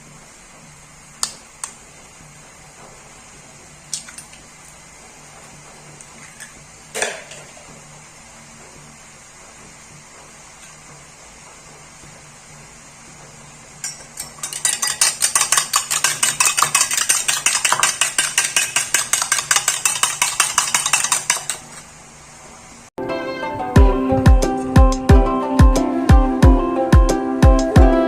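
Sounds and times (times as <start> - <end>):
fork clinking against a bowl: 13.8 - 21.8.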